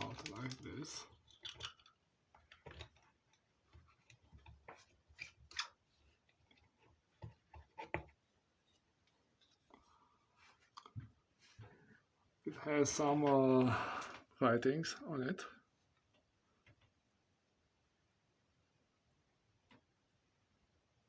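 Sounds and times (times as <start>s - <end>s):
clicks and knocks of handled parts: 0.0s - 8.2s.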